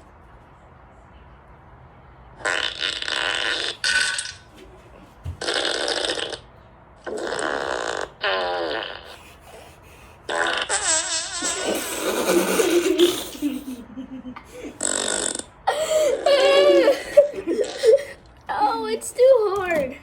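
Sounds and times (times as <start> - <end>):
fart sound effects: 2.4 - 4.5, 5.3 - 9.4, 10.3 - 13.6, 14.8 - 15.6.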